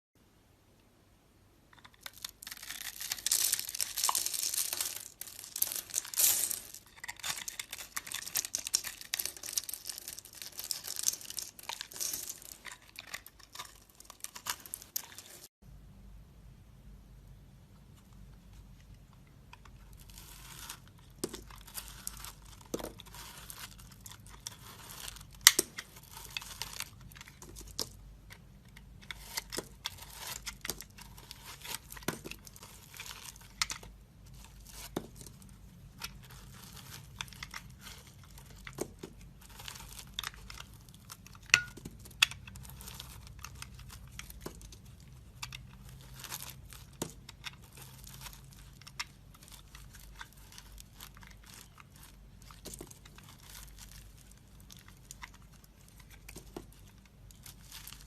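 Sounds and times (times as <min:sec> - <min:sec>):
dry soap crackling and crunching: 0:01.7 - 0:15.6, 0:18.5 - 0:58.0.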